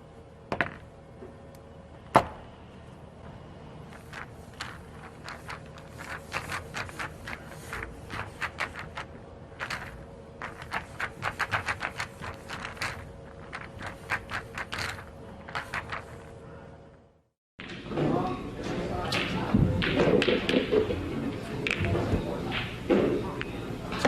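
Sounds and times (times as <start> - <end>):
room tone hum: 0.0 - 24.0
billiard balls clicking: 0.5 - 1.0, 3.8 - 16.4, 19.1 - 24.0.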